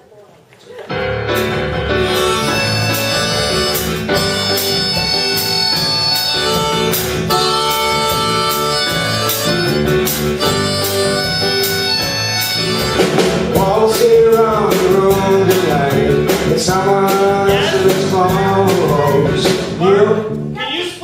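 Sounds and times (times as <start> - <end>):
band accompaniment: 0.9 - 21.0
harmonica melody: 1.0 - 16.2.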